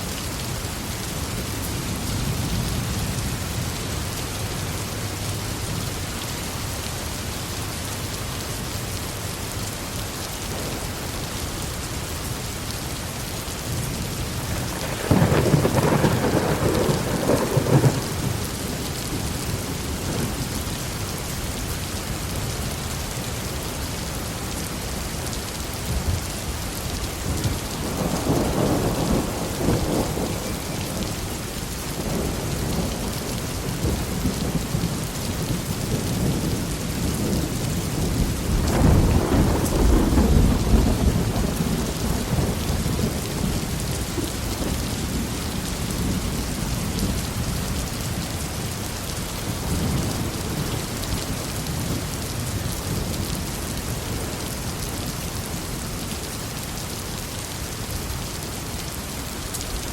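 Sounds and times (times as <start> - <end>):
heavy rain falling: 0.0 - 59.9
rolling thunder: 14.4 - 20.6, 27.2 - 47.5.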